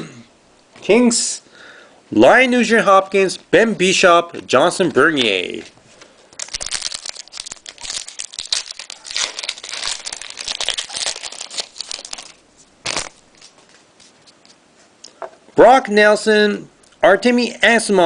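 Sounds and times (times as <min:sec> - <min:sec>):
foil wrapper crinkling and tearing: 0:06.3 - 0:13.6.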